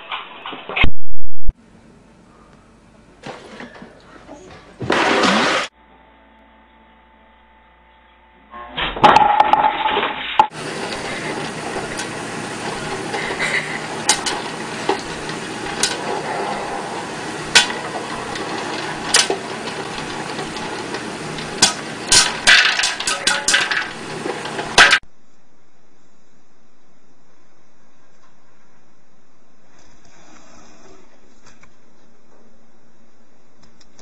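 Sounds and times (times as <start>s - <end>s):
sharp knocks and clattering: 9.0s - 25.0s.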